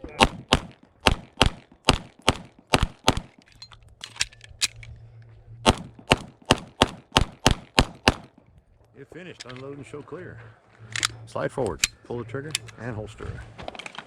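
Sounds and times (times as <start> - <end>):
rapid pistol shots: 0.0 - 3.4, 5.6 - 8.4.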